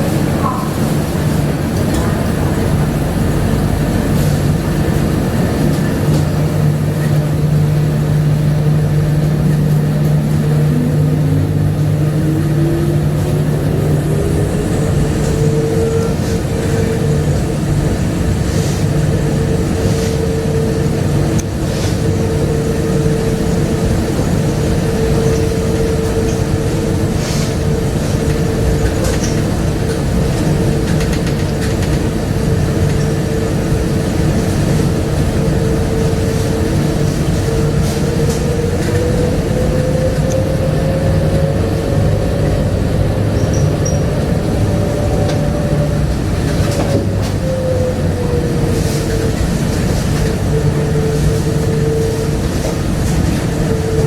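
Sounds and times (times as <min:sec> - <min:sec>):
train rumble: 0:00.0 - 0:54.0.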